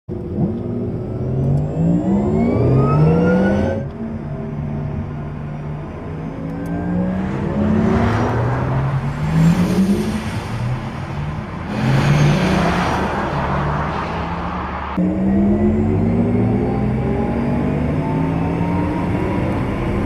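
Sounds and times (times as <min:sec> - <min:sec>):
car rushing past: 0:06.8 - 0:15.3.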